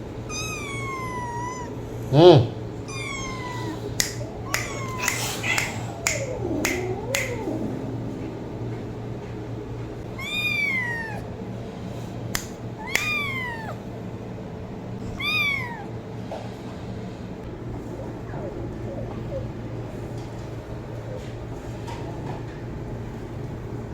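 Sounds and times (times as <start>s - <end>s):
steady low hum: 0.0s - 23.9s
cat meowing: 0.3s - 1.8s, 2.8s - 8.4s, 10.1s - 11.3s, 12.8s - 13.9s, 15.0s - 15.9s
sharp clicks: 4.0s - 7.4s, 12.4s - 13.2s.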